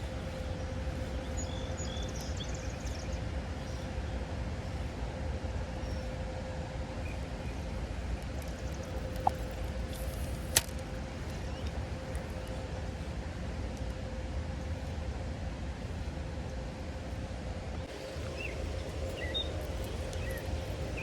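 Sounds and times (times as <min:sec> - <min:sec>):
low outdoor rumble: 0:00.0 - 0:21.0.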